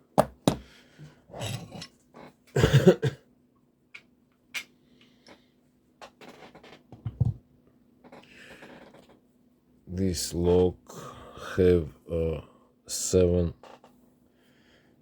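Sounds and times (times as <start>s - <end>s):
man coughing heavily: 2.6s - 3.2s.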